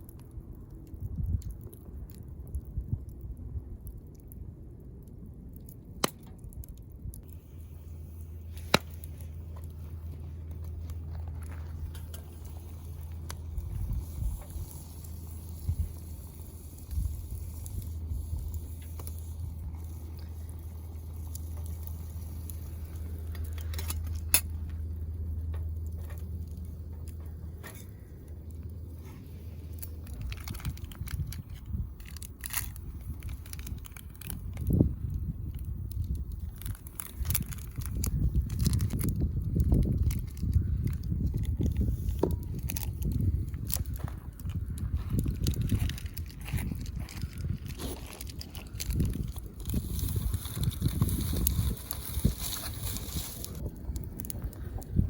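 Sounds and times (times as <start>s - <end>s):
campfire crackling: 0.0s - 55.0s
steady low rumble: 0.0s - 55.0s
sharp pops: 8.5s - 9.8s.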